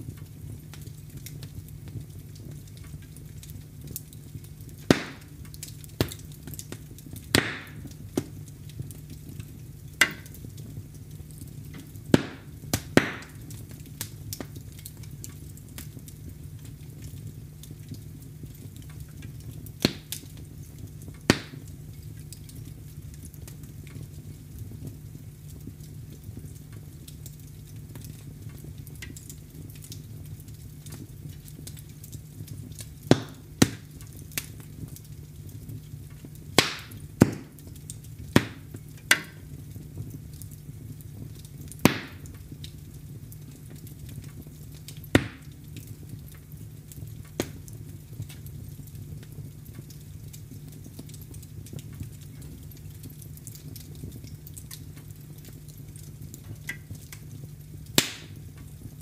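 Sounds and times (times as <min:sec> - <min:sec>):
wood fire crackling: 0:00.0 - 0:59.0
sharp pops from wood: 0:04.9 - 0:05.3, 0:07.4 - 0:07.8, 0:12.2 - 0:13.4, 0:21.3 - 0:21.5, 0:36.6 - 0:37.5, 0:45.2 - 0:45.4, 0:58.0 - 0:58.3.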